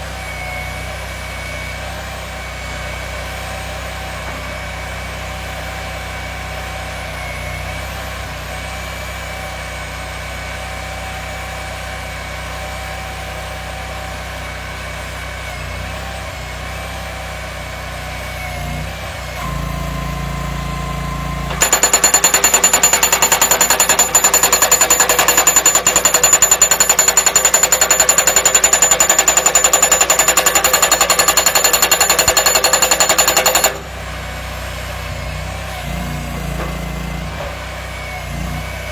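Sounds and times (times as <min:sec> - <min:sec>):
machine engine running: 0:21.4 - 0:34.6
pile-driving hammer blows: 0:21.5 - 0:33.9.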